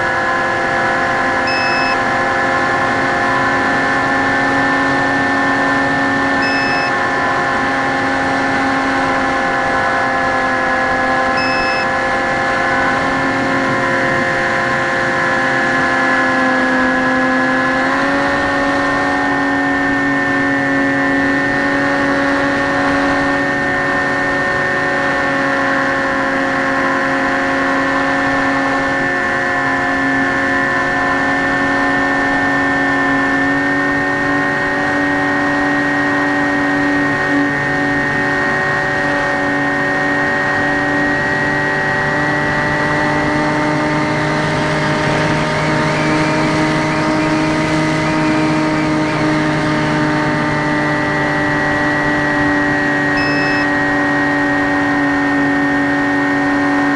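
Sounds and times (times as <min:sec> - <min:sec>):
electric motor and propeller whine: 0:00.0 - 0:56.9
short high beeps: 0:01.5 - 0:02.0, 0:06.4 - 0:07.0, 0:11.4 - 0:12.0, 0:53.2 - 0:53.7.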